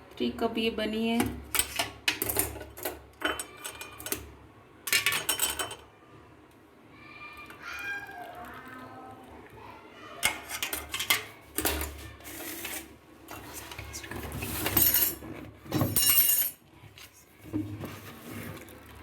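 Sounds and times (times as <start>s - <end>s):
cups and utensils clinking: 1.5s - 5.9s, 10.2s - 16.6s.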